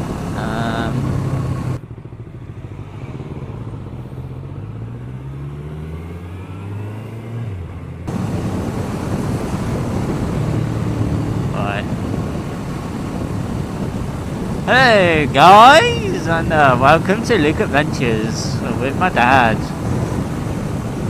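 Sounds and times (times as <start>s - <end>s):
wind rush on microphone: 0.0s - 1.8s, 7.5s - 21.0s
motorcycle engine accelerating: 0.0s - 15.1s.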